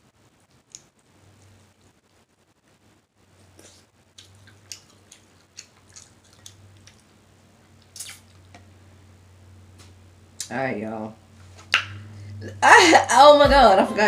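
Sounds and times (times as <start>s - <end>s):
person chewing with mouth open: 3.4s - 8.6s.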